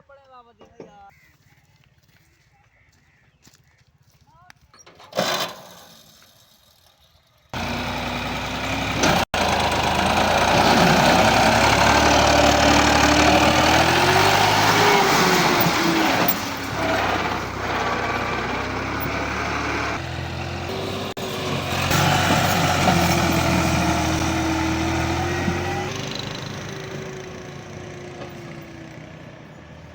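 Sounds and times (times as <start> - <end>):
heavy machinery engine working: 7.6 - 29.4.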